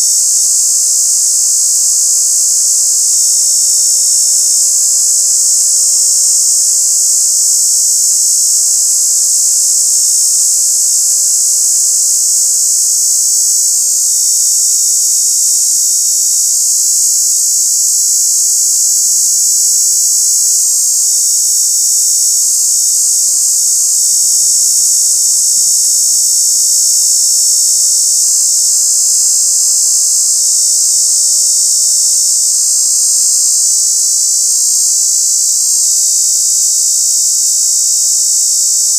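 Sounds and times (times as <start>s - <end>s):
cicada buzzing: 0.0s - 38.9s.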